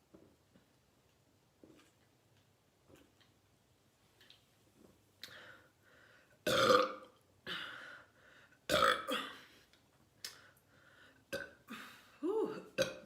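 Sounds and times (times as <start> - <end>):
girl burping: 6.5 - 7.1, 8.7 - 9.4, 11.3 - 13.0.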